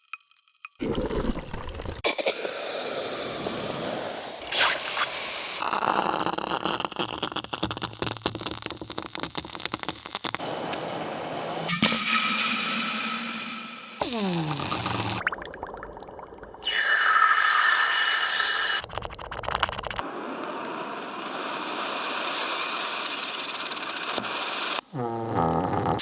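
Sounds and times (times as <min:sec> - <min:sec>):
crackling and popping: 0:00.1 - 0:02.1, 0:04.4 - 0:11.0, 0:14.0 - 0:17.0, 0:18.8 - 0:21.8, 0:23.9 - 0:26.0.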